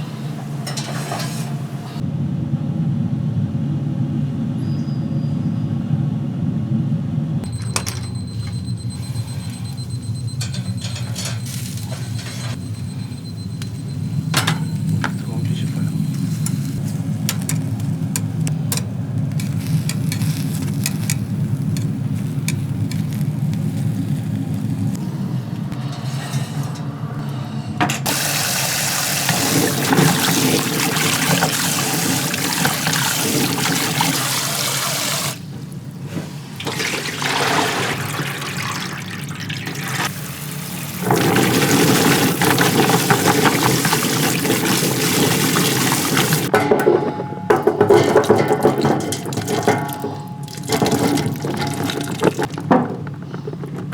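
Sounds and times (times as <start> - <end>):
tap water running into sink: 28.1 - 35.4, 36.6 - 46.5, 47.6 - 53.0.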